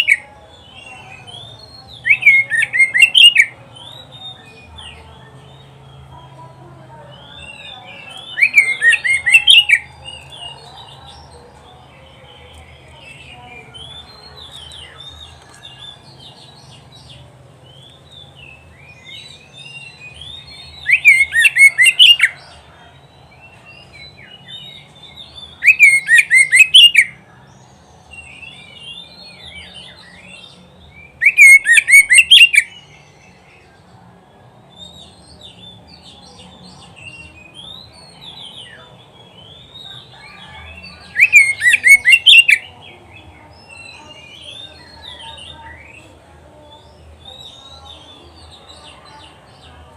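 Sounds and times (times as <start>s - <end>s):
bird singing whistled phrases: 0.0s - 4.5s, 7.2s - 10.2s, 18.1s - 22.4s, 23.7s - 27.2s, 28.2s - 33.4s, 37.0s - 42.7s.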